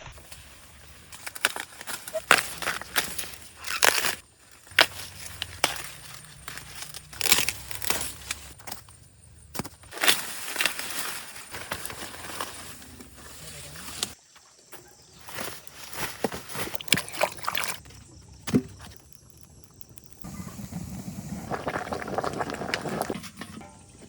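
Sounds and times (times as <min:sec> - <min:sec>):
dry leaves rustling and crackling: 0:00.2 - 0:08.7, 0:09.9 - 0:14.2
plant stalks tearing and snapping: 0:01.1 - 0:08.8.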